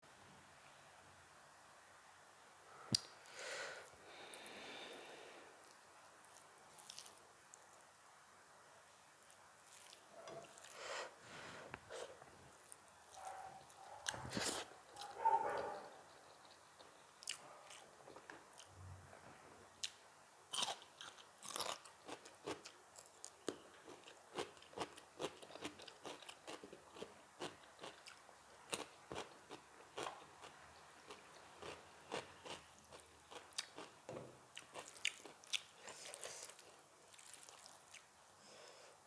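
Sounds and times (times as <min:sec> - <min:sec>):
person chewing crunchy food: 0:06.3 - 0:07.2, 0:09.6 - 0:10.8, 0:12.7 - 0:18.7, 0:20.5 - 0:38.1.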